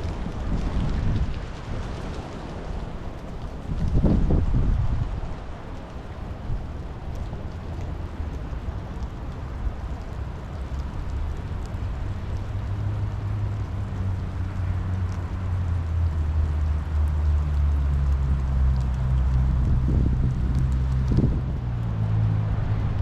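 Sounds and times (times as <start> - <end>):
rain falling: 0.0 - 23.0
low motor hum: 6.4 - 23.0.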